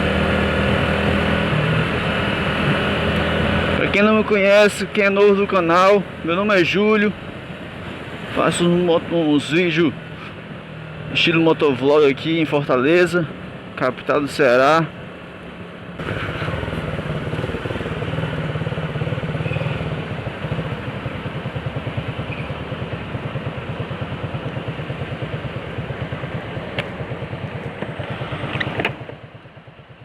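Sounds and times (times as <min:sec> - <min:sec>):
motorcycle engine running: 0:00.0 - 0:08.4, 0:16.0 - 0:30.0.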